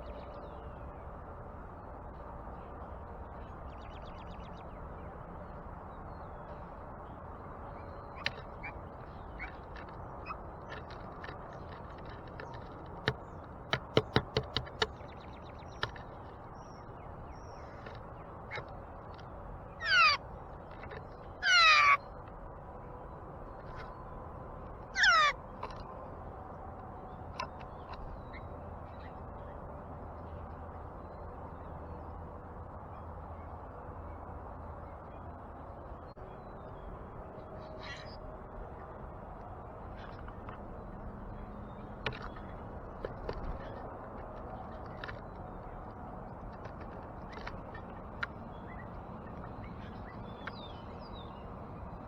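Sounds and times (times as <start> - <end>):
sharp taps: 12.6 - 15.0
bird giving harsh calls: 19.8 - 20.2, 21.4 - 22.0, 25.0 - 25.4.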